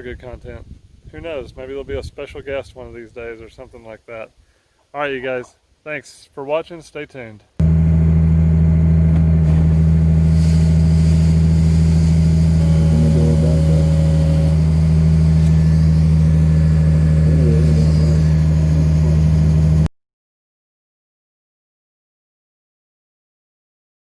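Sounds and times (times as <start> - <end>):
engine running steadily: 7.6 - 19.9.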